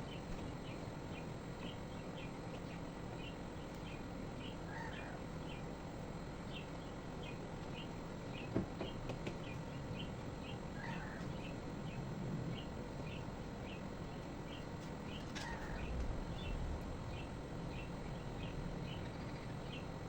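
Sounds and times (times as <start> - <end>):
bird chirping: 6.5 - 19.9.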